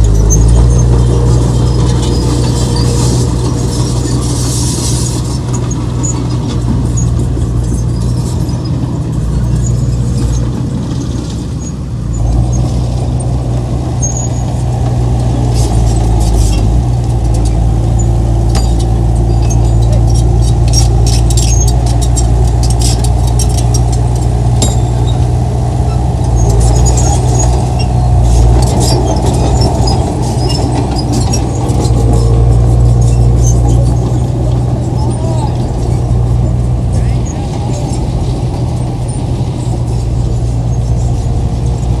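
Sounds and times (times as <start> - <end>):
metallic clicks and squeaks: 0.0 - 8.8, 15.5 - 36.3
heavy diesel engine drone: 0.0 - 42.0.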